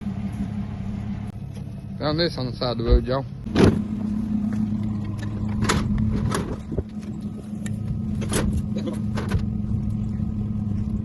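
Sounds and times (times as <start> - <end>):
vehicle engine idling: 0.0 - 11.0.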